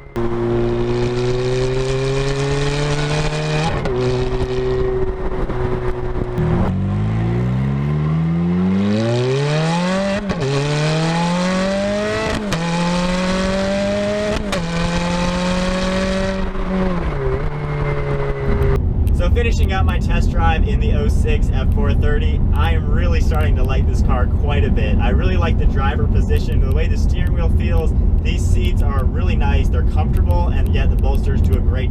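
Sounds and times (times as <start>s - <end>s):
car engine accelerating through gears: 0.0s - 19.1s.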